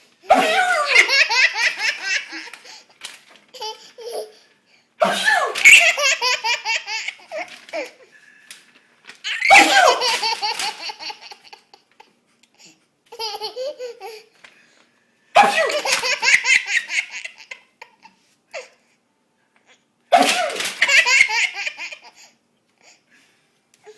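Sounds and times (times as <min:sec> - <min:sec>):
man sneezing: 0:00.3 - 0:01.1, 0:05.0 - 0:05.8, 0:09.4 - 0:10.1, 0:15.4 - 0:15.9, 0:20.1 - 0:20.8
toddler laughing: 0:00.3 - 0:02.8, 0:03.5 - 0:04.4, 0:05.6 - 0:08.0, 0:09.3 - 0:12.1, 0:13.1 - 0:14.3, 0:15.6 - 0:18.7, 0:20.6 - 0:22.3.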